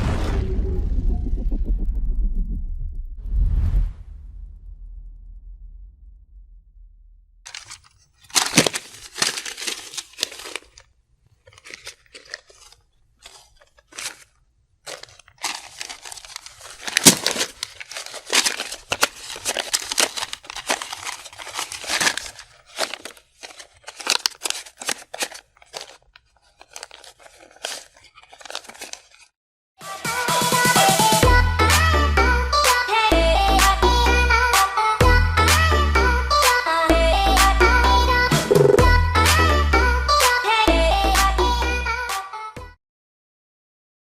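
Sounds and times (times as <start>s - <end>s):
paper rustling and crumpling: 7.5s - 29.4s
music: 29.8s - 42.8s.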